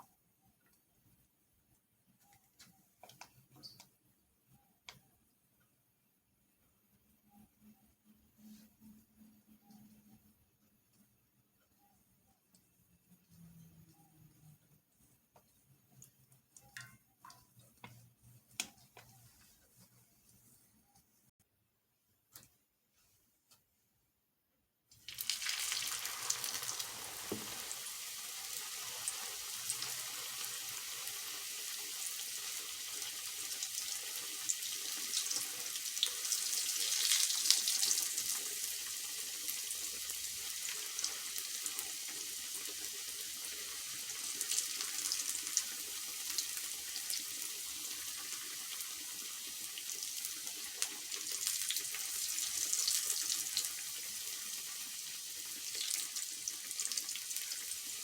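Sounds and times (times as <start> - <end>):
food sizzling in hot oil: 25.0 - 58.0.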